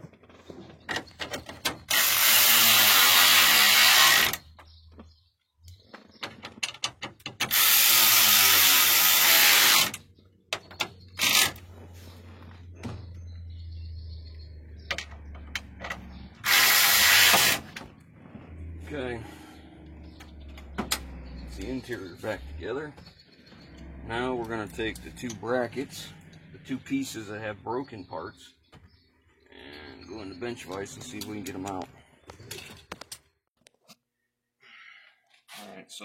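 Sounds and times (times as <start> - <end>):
battery-powered ratchet running: 1.9 - 4.4, 16.4 - 17.6
clicks and handling knocks: 4.5 - 7.5.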